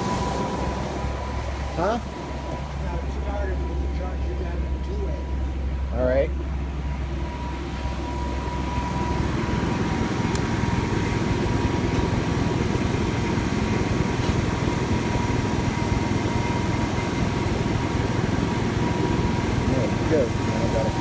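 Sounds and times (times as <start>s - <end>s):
faint high whine: 0.0s - 12.3s
car engine idling: 0.0s - 21.0s.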